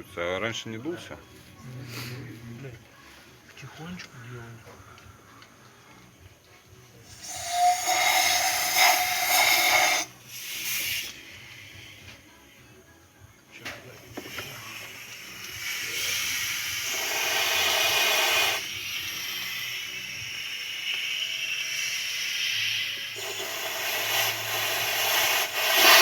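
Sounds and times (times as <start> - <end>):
compressed air hissing: 7.0 - 12.9, 13.6 - 26.0.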